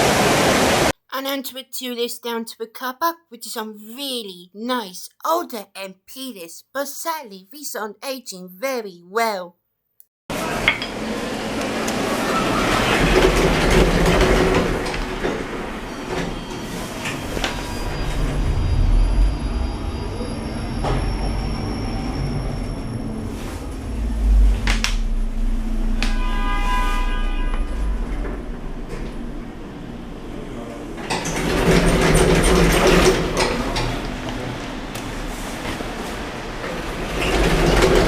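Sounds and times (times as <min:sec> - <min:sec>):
lift rumbling and rattling: 0:11.2 - 0:26.2, 0:27.6 - 0:38.0
buzzing tone: 0:23.0 - 0:30.1.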